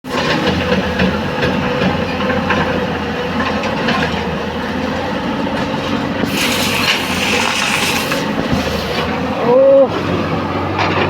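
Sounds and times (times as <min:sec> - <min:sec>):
heavy machinery engine drone: 0:00.1 - 0:11.0
hiss: 0:06.2 - 0:09.2.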